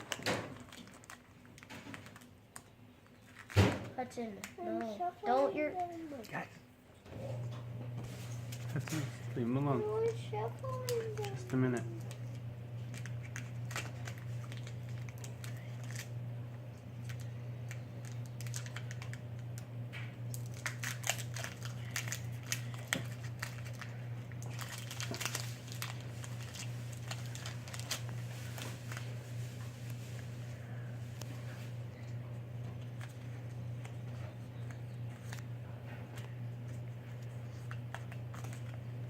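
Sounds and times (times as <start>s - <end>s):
foil wrapper crinkling and tearing: 0.0s - 3.8s, 8.5s - 16.1s, 17.0s - 30.4s, 33.0s - 35.4s, 36.2s - 39.0s
cards being handled: 8.1s - 16.1s, 20.3s - 30.4s, 32.8s - 38.8s.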